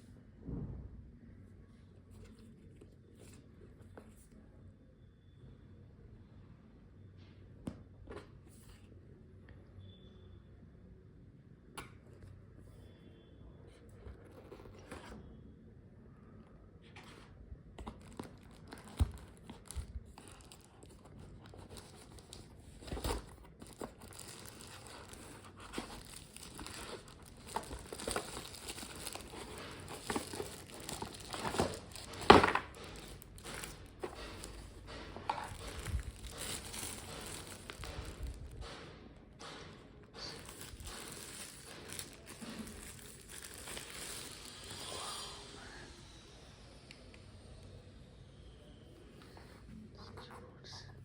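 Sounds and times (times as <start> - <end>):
packaging crinkling and rustling: 17.8 - 38.9, 40.2 - 45.1.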